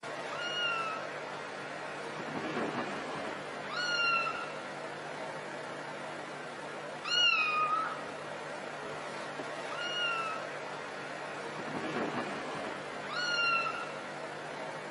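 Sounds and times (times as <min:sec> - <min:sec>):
cat meowing: 0:00.3 - 0:01.0, 0:03.7 - 0:04.5, 0:07.0 - 0:08.0, 0:09.7 - 0:10.5, 0:13.1 - 0:14.0.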